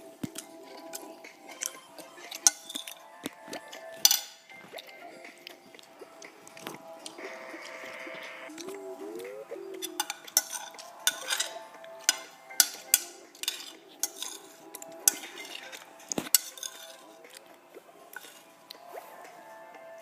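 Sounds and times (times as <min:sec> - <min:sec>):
hard objects clicking: 0:00.2 - 0:04.5, 0:09.8 - 0:18.5.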